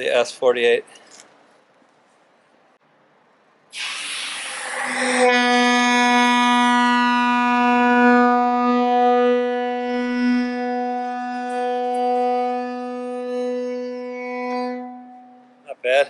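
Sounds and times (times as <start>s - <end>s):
locomotive air horn blast: 3.7s - 15.7s.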